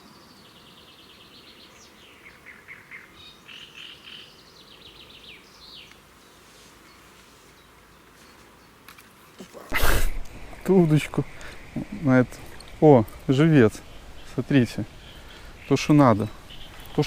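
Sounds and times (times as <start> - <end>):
songbirds singing and chirping: 0.0 - 9.6, 10.2 - 17.0
faint background hiss: 0.0 - 17.0.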